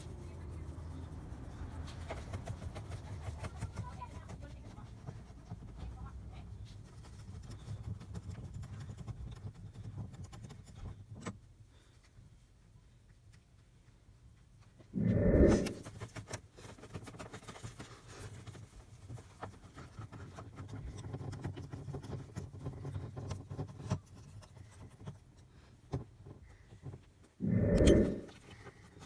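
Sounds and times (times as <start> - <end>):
parts rubbing and scraping: 15.0 - 17.2, 27.4 - 29.0.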